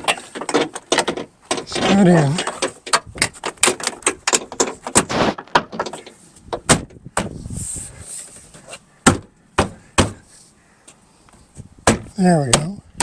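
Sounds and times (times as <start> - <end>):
brief rustle: 1.6 - 6.4.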